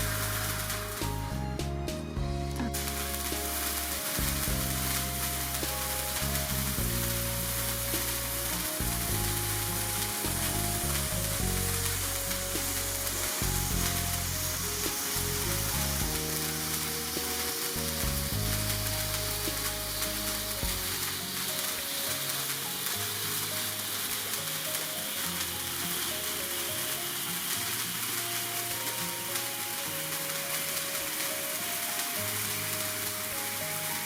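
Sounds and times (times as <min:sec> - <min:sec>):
background music: 0:00.0 - 0:34.0
sparkler candle hissing crackle: 0:00.0 - 0:34.0.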